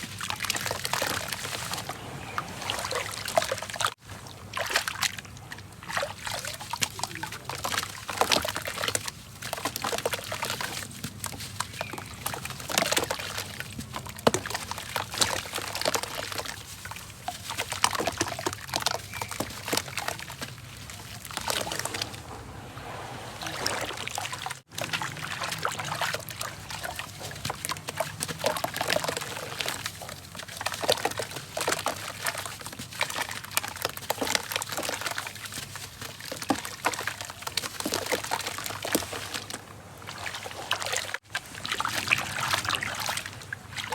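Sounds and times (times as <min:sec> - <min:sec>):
wet sand crumbling: 0:00.0 - 0:04.0, 0:06.5 - 0:32.3
water trickling and sloshing: 0:00.0 - 0:43.9.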